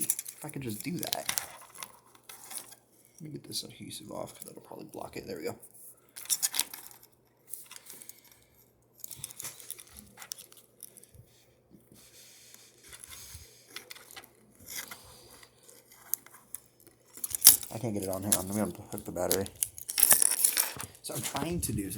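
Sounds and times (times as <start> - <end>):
handling of small parts: 0.0 - 3.2, 4.1 - 11.4, 12.5 - 21.9
adhesive tape peeling: 15.7 - 20.9.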